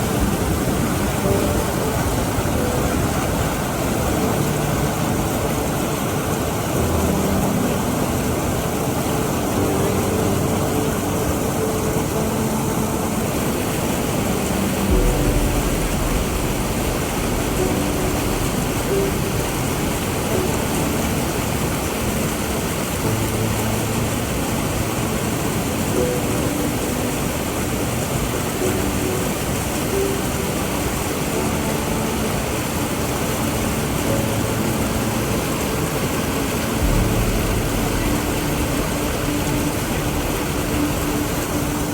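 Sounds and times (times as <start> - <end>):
waterfall roaring: 0.0 - 41.9
deep low rumble: 14.9 - 21.1.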